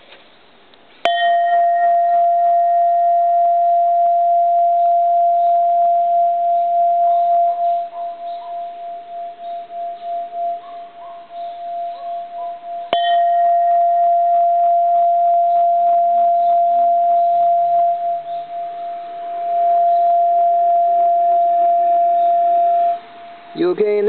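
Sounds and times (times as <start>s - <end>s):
temple bell ringing: 1.1s - 23.0s.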